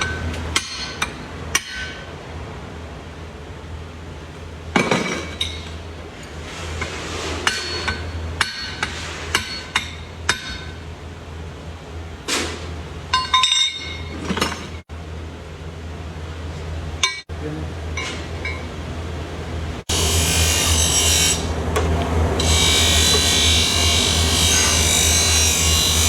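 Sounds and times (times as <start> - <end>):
hammer striking steel on anvil: 0.0 - 2.0, 7.4 - 10.8, 17.0 - 17.3.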